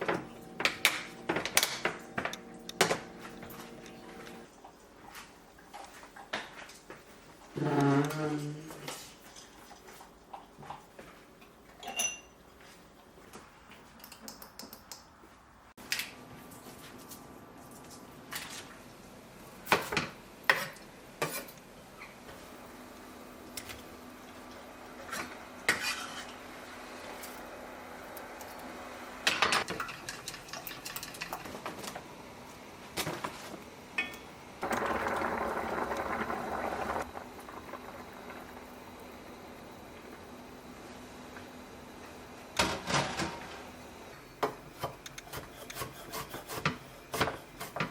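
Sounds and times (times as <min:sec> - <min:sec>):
utensils and dishes clinking: 0:11.8 - 0:12.4.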